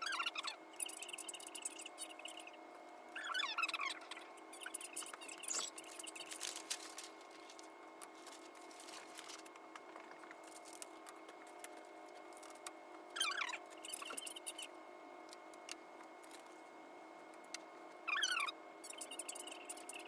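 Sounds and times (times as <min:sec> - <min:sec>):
steady hum: 0:00.0 - 0:20.0
rustling: 0:05.4 - 0:09.5.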